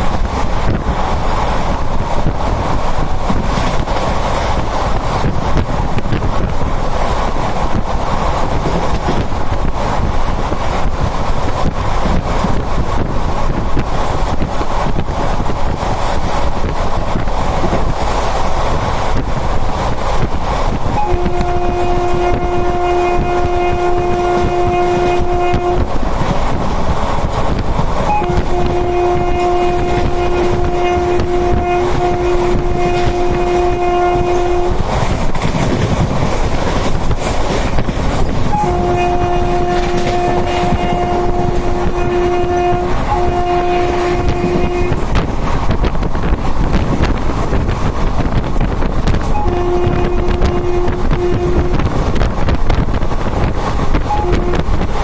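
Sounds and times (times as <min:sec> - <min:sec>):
moving train rumble: 0:00.0 - 0:55.0
train horn blasts: 0:20.9 - 0:26.0, 0:28.1 - 0:35.0, 0:38.4 - 0:45.2, 0:49.3 - 0:52.2, 0:54.1 - 0:55.0.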